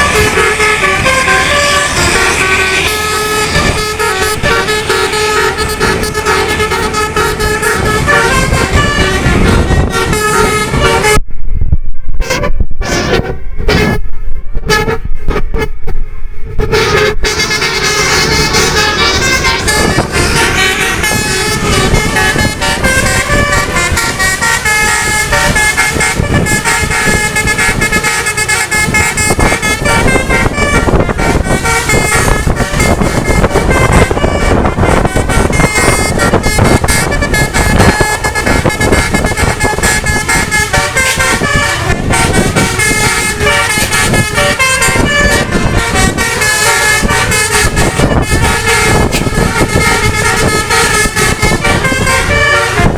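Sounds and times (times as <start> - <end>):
bus air horns playing melody: 0.0 - 11.2, 12.2 - 52.9
bus engines running: 0.0 - 11.3, 12.8 - 52.9.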